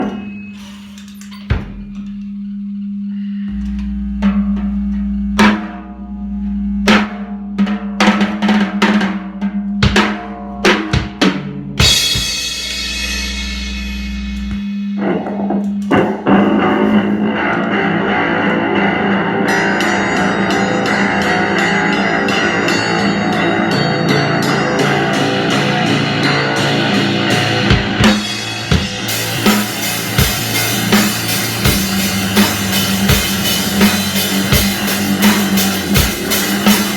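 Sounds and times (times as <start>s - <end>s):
low hum and drone: 0.0s - 7.0s
punk band playing loud: 4.1s - 6.0s, 6.8s - 36.9s
drum and cymbal hits: 4.2s - 6.0s, 6.8s - 36.9s
fast cymbal beats: 11.8s - 15.0s, 19.5s - 36.9s.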